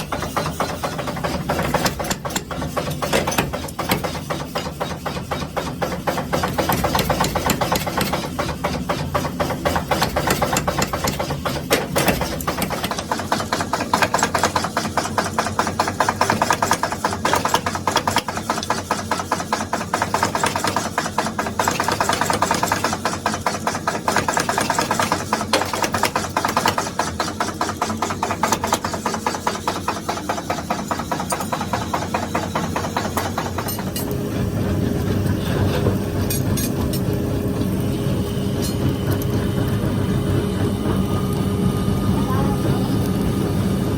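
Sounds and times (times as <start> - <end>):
power hammer pounding steel: 0.0 - 41.1
machine running hum: 27.8 - 43.9.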